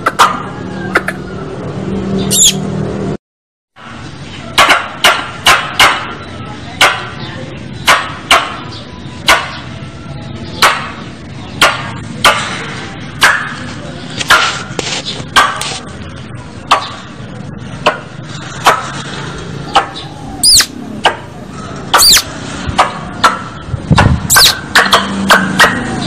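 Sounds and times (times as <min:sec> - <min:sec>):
squirrel chipping calls: 0:00.0 - 0:01.3, 0:02.2 - 0:02.7, 0:19.7 - 0:21.2, 0:21.9 - 0:22.3, 0:24.3 - 0:25.7
squirrel squealing call: 0:02.2 - 0:02.7, 0:20.1 - 0:20.8, 0:21.9 - 0:22.3, 0:24.3 - 0:24.6.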